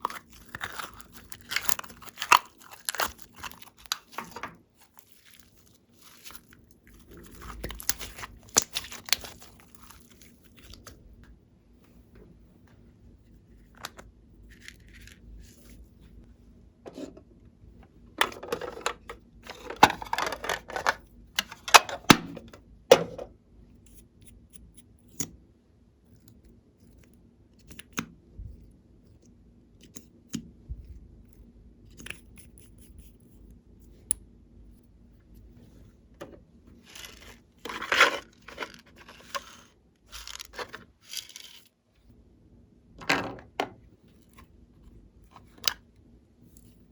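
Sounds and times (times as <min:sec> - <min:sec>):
slime squishing and crackling: 0:00.0 - 0:11.0.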